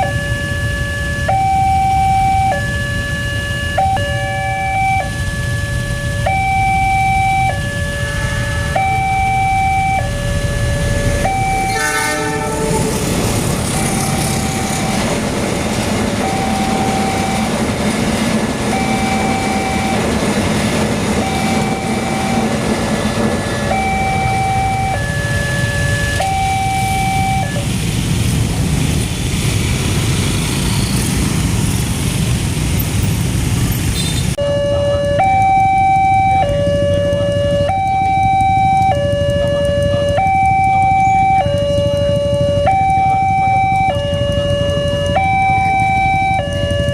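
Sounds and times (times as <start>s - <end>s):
two-tone level-crossing siren: 0.0s - 17.9s, 18.5s - 27.8s, 34.4s - 46.9s
train rumble and wheel noise: 0.0s - 46.9s
train horn blast: 11.2s - 13.2s.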